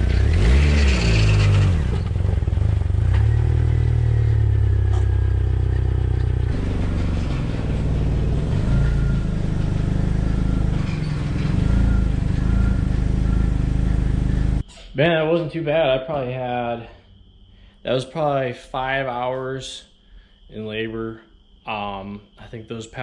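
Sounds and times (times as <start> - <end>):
car engine running: 0.0 - 14.6.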